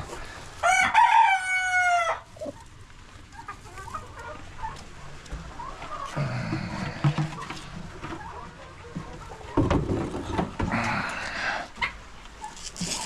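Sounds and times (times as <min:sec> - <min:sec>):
hen clucking: 0:00.1 - 0:13.0
rooster crowing: 0:00.6 - 0:02.3
scratching noises: 0:02.3 - 0:13.0.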